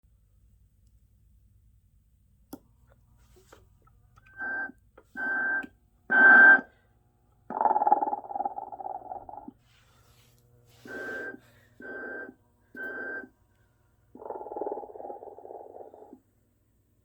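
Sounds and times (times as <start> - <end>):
electronic snoring from small speaker: 7.5 - 9.6, 10.8 - 13.3, 14.1 - 16.2.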